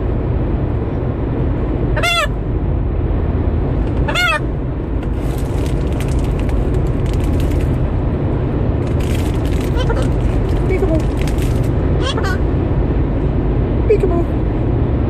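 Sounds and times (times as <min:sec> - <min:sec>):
low rumble: 0:00.0 - 0:15.0
goose honking: 0:02.0 - 0:02.3, 0:04.0 - 0:04.5, 0:09.7 - 0:10.2, 0:12.0 - 0:12.4
crackling: 0:05.0 - 0:07.9, 0:08.8 - 0:11.8.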